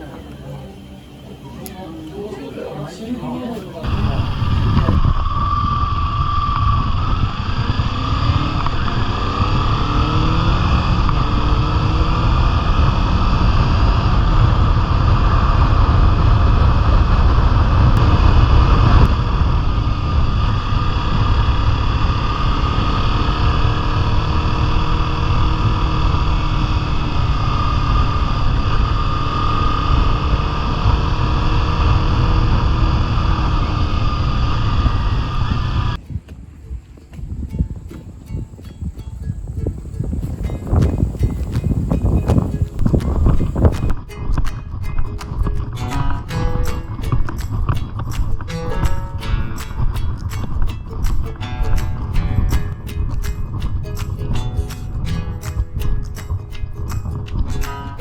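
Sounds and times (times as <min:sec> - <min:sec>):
motorcycle engine running: 0:03.8 - 0:36.0, 0:38.8 - 0:44.0
wind rumble on microphone: 0:03.8 - 0:58.0.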